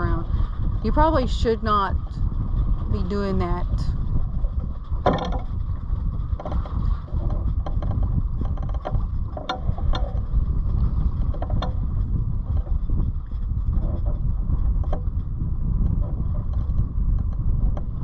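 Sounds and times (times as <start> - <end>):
wind buffeting microphone: 0.0 - 18.0
knocks and rattles: 4.4 - 10.4, 11.1 - 11.8.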